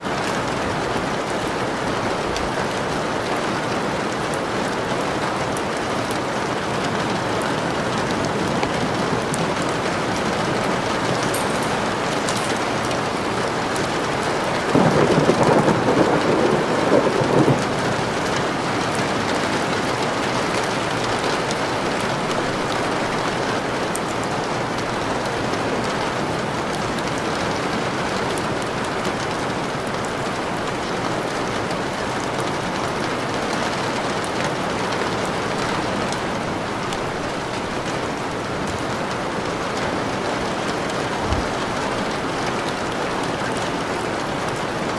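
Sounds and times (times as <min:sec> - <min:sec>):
steady rain: 0:00.0 - 0:44.9
thunder: 0:14.5 - 0:19.1.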